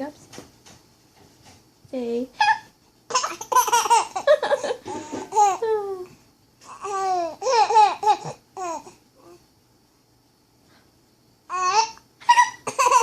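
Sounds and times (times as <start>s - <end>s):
small child laughing: 3.1s - 5.8s, 11.8s - 13.0s.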